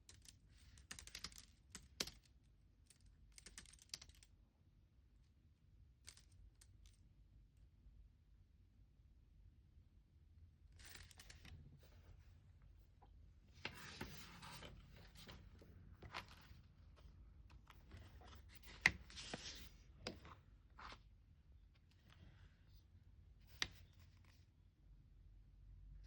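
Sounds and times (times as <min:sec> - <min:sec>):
paper rustling: 0:13.5 - 0:21.1.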